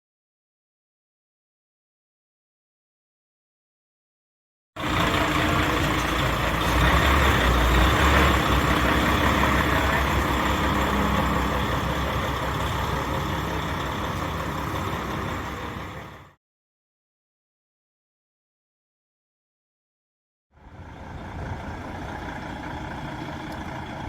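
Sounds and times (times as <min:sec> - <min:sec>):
truck diesel engine pulling away: 0:04.8 - 0:16.4, 0:20.6 - 0:24.0.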